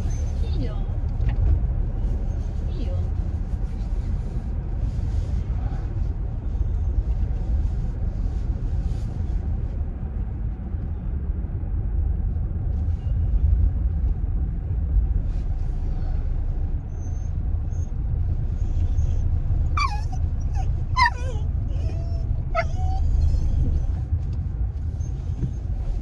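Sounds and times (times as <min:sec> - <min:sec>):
car driving rumble inside cabin: 0:00.0 - 0:26.0
dog whining: 0:16.9 - 0:24.0.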